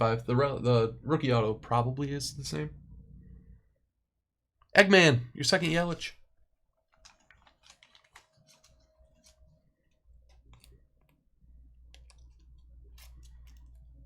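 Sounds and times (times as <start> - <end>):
low hum: 0.0 - 3.9
trading cards clicking and tapping: 7.0 - 11.2.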